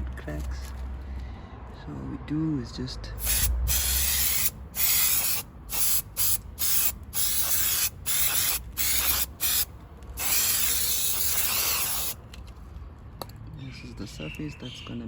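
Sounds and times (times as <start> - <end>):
aerosol can spraying bursts: 3.2 - 12.2.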